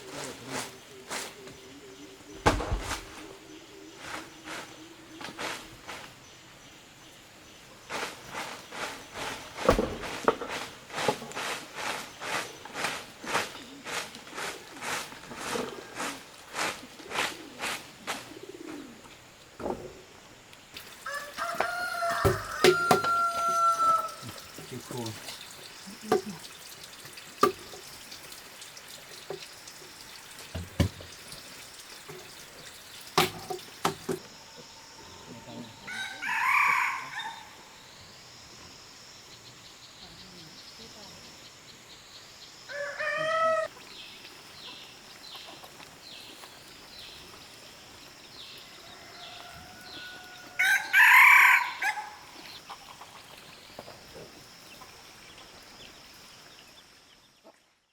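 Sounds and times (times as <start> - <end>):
sharp knocks: 2.4 - 3.3
rooster crowing: 21.0 - 24.4, 34.7 - 37.8, 42.7 - 43.7, 48.7 - 52.4.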